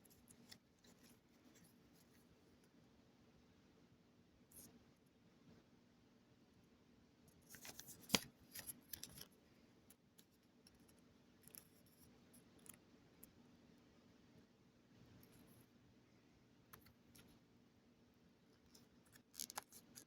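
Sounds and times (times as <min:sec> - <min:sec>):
faint room hum: 0:00.0 - 0:20.0
handling rustles and clicks: 0:07.4 - 0:12.8.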